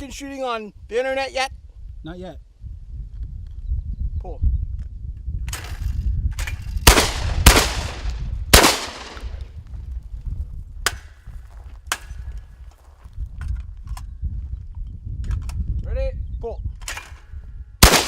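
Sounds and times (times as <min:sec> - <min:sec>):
shotgun shots with echo: 0:06.8 - 0:09.4, 0:17.8 - 0:18.0.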